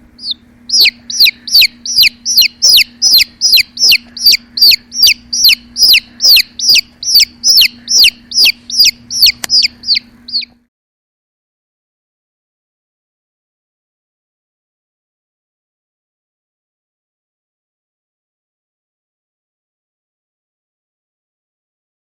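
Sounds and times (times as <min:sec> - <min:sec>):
chick peeping: 0:00.0 - 0:10.6
faint low hum: 0:00.0 - 0:10.7.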